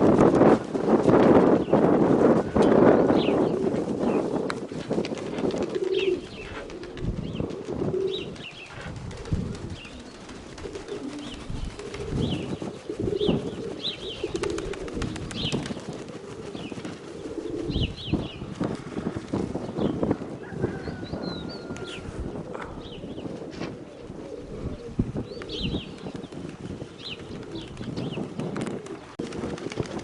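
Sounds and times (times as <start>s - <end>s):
wind buffeting microphone: 0.0s - 30.0s
pigeons cooing: 1.4s - 30.0s
small birds chirping: 5.7s - 18.6s, 24.7s - 29.1s.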